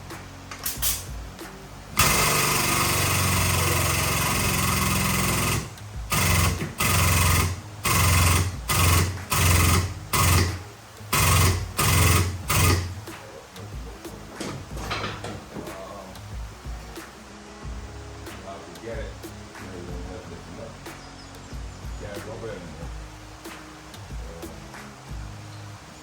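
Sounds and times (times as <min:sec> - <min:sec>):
workshop tool running: 0:00.6 - 0:17.2.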